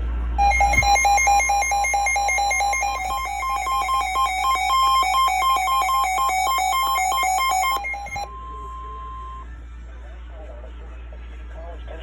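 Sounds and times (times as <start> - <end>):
rapid electronic beeping: 0.4 - 8.3.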